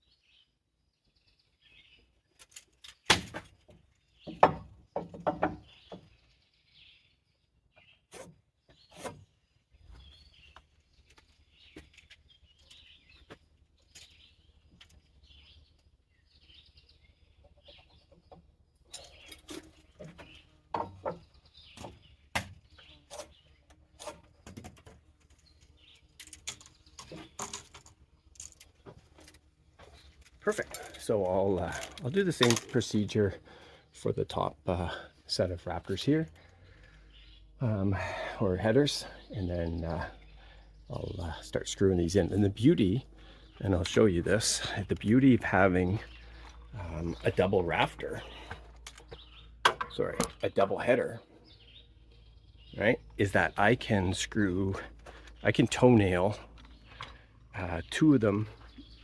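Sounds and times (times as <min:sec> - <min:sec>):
small birds chirping: 0:00.0 - 0:59.0
knocks on wooden rafters: 0:03.1 - 0:06.1, 0:20.0 - 0:22.6.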